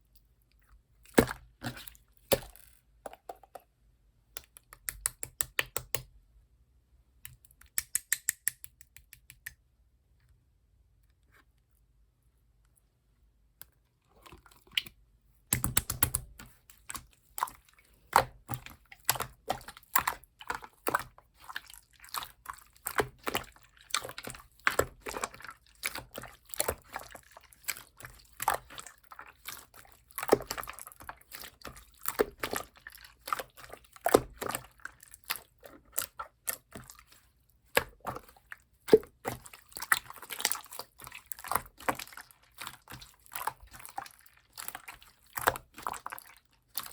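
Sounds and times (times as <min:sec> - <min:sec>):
slime squelching by hand: 0:00.5 - 0:02.7, 0:14.0 - 0:46.9.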